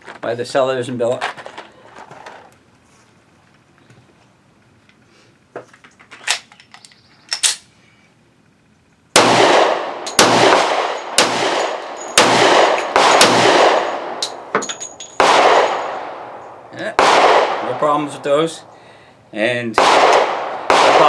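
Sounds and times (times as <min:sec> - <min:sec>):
pistol shots with echo: 0:09.2 - 0:14.6, 0:15.2 - 0:18.3, 0:19.8 - 0:21.0.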